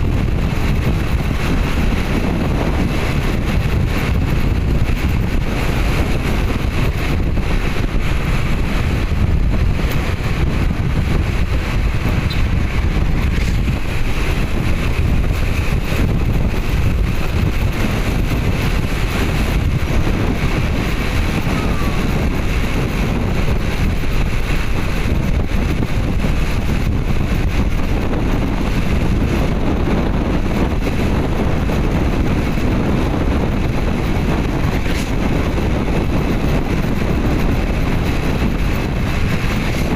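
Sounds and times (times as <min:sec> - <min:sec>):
low vehicle rumble: 0:00.0 - 0:39.9
wind buffeting microphone: 0:00.0 - 0:39.9.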